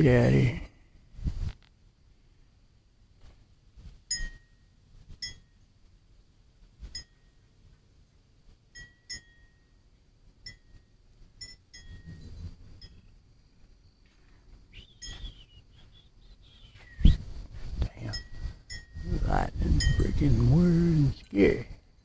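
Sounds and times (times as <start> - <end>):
wind rumbling on microphone: 1.1 - 1.7, 14.7 - 21.8
metal wind chimes ringing: 4.1 - 5.6, 8.8 - 9.8, 10.4 - 13.1, 15.0 - 15.2, 18.0 - 20.9
bird call: 14.7 - 17.2
gusty storm wind: 16.9 - 21.8.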